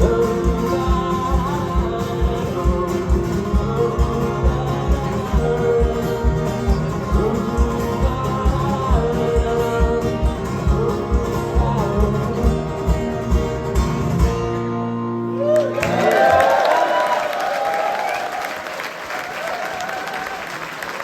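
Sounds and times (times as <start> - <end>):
steady drum beat: 0.0 - 14.3
audience applause and cheering: 15.3 - 21.0.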